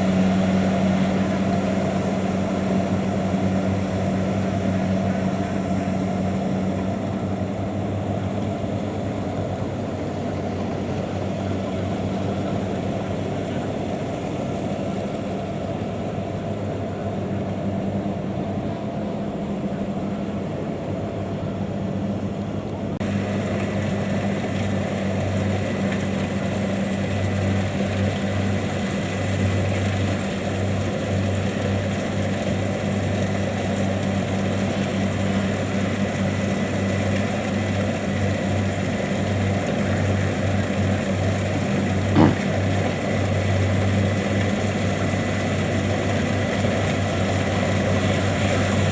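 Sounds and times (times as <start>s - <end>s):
diesel engine droning: 0.0s - 48.9s.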